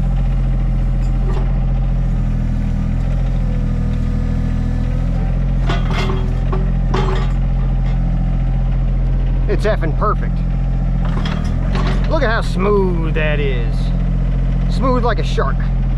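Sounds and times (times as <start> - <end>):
diesel engine running under load: 0.0 - 15.9
metallic rattles: 0.5 - 2.0, 5.3 - 9.3, 11.0 - 12.5.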